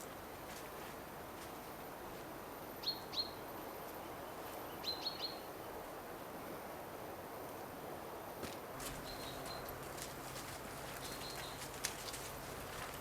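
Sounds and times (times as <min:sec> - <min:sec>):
outdoor background hiss: 0:00.0 - 0:13.0.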